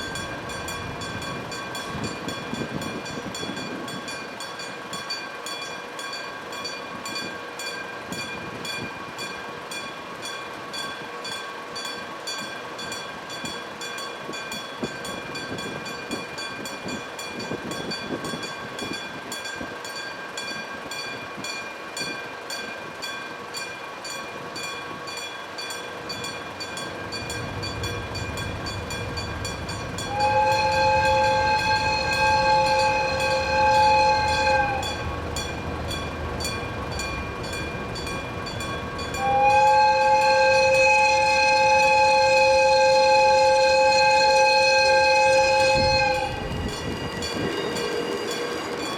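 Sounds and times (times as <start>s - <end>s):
diesel locomotive rumble: 0.0s - 48.9s
locomotive two-tone horn: 27.2s - 35.6s, 38.8s - 48.9s.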